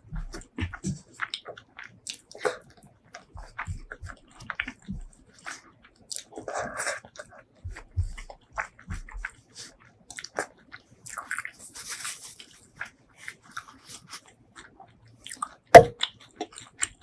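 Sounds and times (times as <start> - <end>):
person chewing with wet mouth sounds: 0.0 - 17.0.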